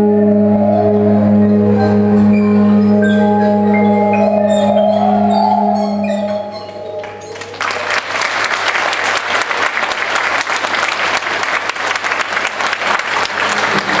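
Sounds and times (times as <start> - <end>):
audience applauding: 7.0 - 14.0.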